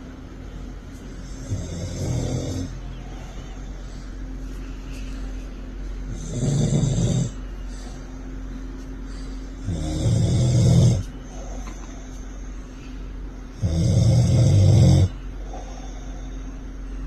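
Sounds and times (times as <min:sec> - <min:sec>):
person snoring: 0:01.1 - 0:03.8, 0:06.1 - 0:08.0, 0:09.1 - 0:12.0, 0:13.6 - 0:16.6.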